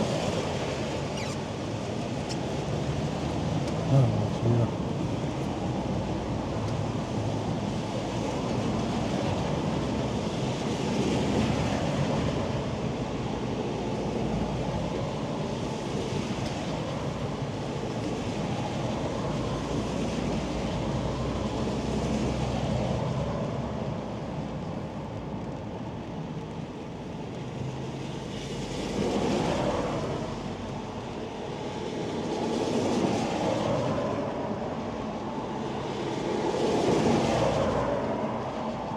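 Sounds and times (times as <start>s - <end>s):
wet road noise: 0.0s - 7.3s.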